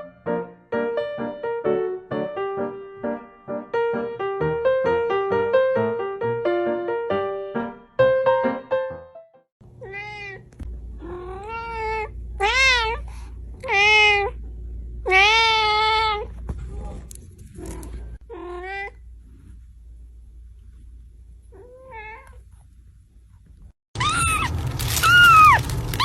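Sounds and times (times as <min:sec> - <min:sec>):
piano notes: 0:00.0 - 0:09.5
cat meowing: 0:09.8 - 0:13.0, 0:15.1 - 0:16.3, 0:24.0 - 0:26.0.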